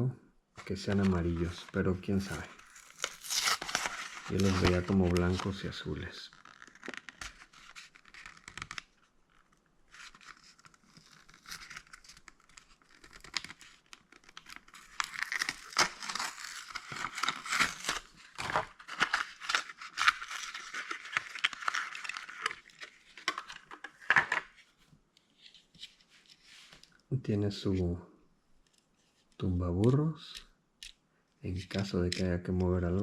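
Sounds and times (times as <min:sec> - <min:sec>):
packaging tearing and crinkling: 0:00.9 - 0:05.6, 0:06.3 - 0:24.5.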